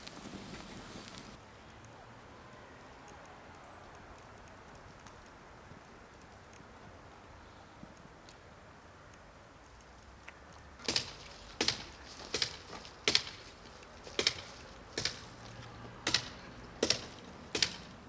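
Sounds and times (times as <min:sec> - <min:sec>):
sharp knocks: 0:10.8 - 0:18.0.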